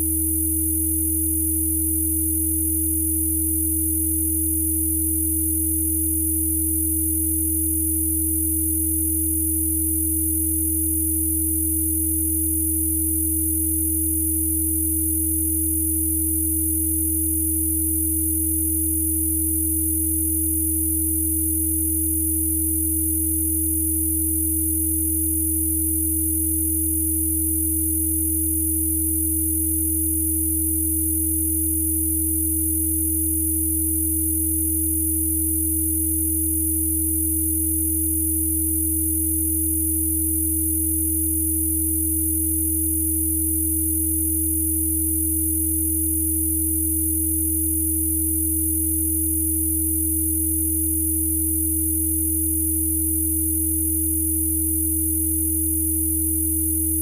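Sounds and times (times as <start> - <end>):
middle electronic tone: 0.0 - 5.4.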